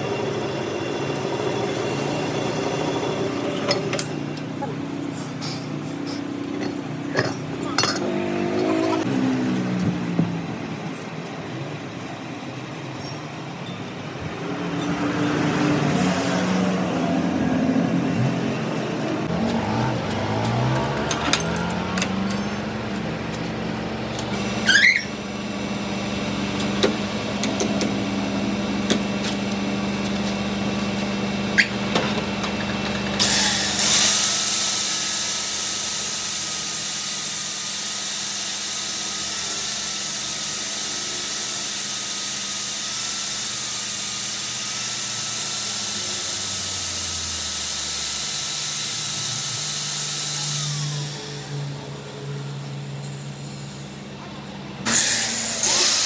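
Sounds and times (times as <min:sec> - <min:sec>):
power tool whining: 0:14.4 - 0:54.0, 0:54.8 - 0:56.0.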